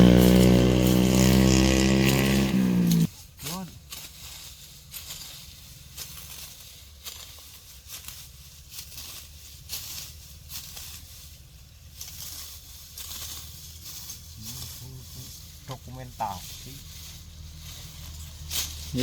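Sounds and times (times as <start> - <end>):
low steady rumble: 0.0 - 3.1
sickle cutting grass: 0.0 - 19.0.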